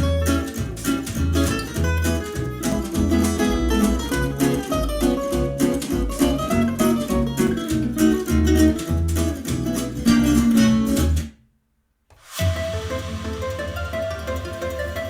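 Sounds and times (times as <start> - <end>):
heavy pulsing bass line: 0.0 - 9.2
plucked-string notes: 0.0 - 11.4, 12.4 - 15.0.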